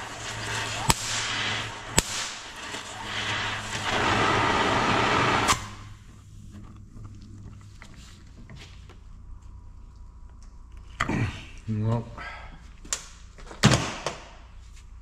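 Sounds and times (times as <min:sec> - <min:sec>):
torch shutoff click: 0:00.0 - 0:05.9
torch flame hissing: 0:00.0 - 0:06.1.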